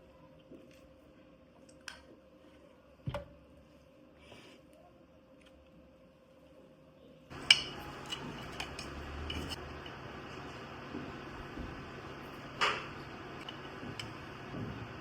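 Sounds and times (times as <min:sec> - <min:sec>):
dishes and utensils clinking: 0:07.3 - 0:09.6.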